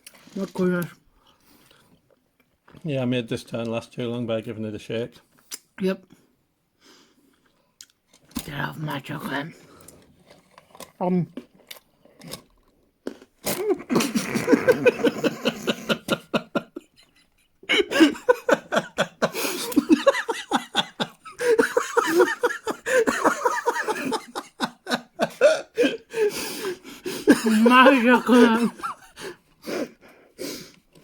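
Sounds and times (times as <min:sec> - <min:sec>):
people laughing: 0:13.9 - 0:29.4.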